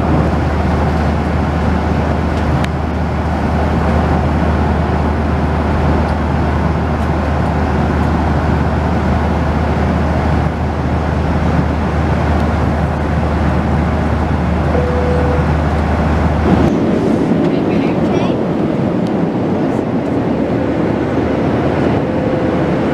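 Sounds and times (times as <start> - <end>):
airplane cabin roar: 0.0 - 22.9
short single tone: 14.7 - 15.6.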